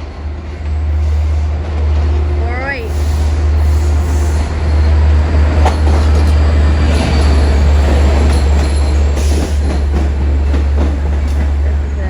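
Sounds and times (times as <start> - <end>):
train rumbling on rails: 0.0 - 12.0.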